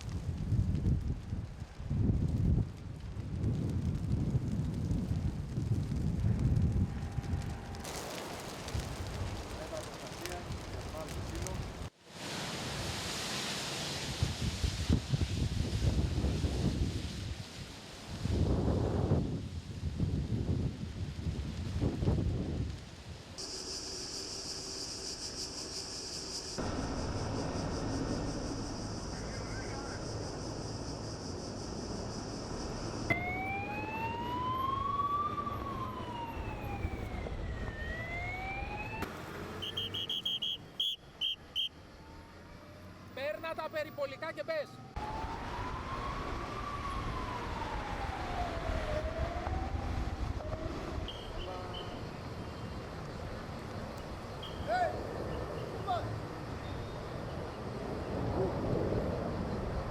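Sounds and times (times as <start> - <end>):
wind hiss: 0.0 - 42.0, 45.0 - 59.9
low rumble: 26.6 - 33.7
siren wailing: 33.1 - 43.0, 44.0 - 51.8.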